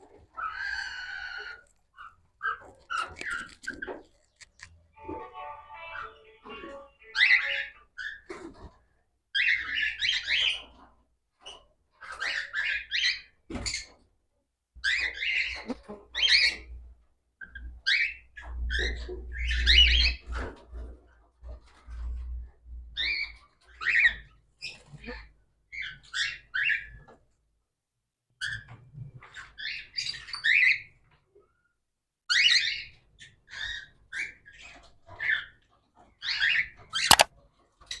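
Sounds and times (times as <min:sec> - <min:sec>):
cockatiels calling: 0:07.1 - 0:08.2.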